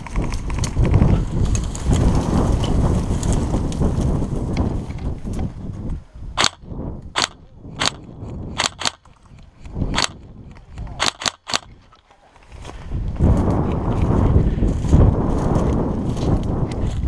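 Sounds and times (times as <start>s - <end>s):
wind rumbling on microphone: 0.0s - 17.0s
airsoft gun shots: 6.4s - 6.6s, 7.2s - 9.0s, 11.0s - 11.7s.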